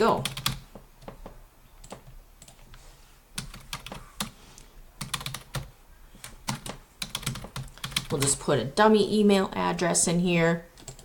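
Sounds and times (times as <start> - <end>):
computer keyboard keys clicking: 0.2 - 2.7, 3.4 - 4.3, 5.0 - 8.3, 10.8 - 11.0.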